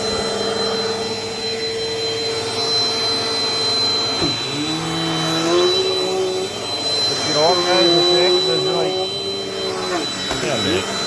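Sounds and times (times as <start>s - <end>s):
vacuum cleaner motor whine: 0.0s - 11.0s.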